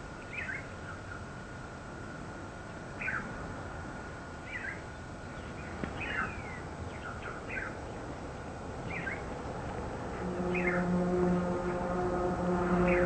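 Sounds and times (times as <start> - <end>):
low steady hum: 0.0 - 13.0
small bird chirping: 0.2 - 1.2, 4.4 - 7.8, 8.9 - 9.3
breeze rushing: 1.2 - 13.0.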